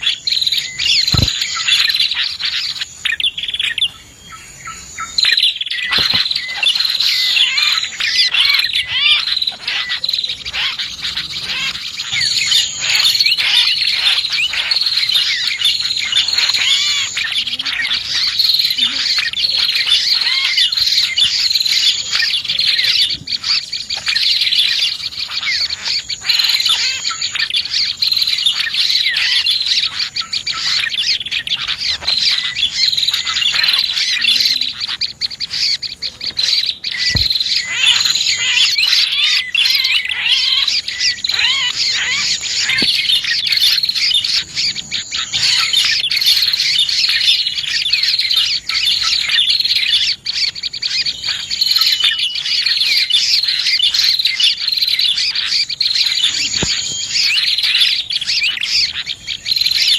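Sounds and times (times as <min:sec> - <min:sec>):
small songbirds chirping: 0:00.0 - 0:59.9.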